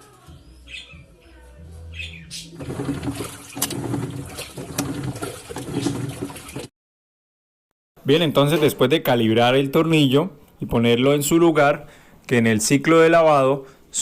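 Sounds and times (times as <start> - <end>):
washing machine drum churning water: 2.6 - 6.7
washing machine motor hum: 2.6 - 6.7.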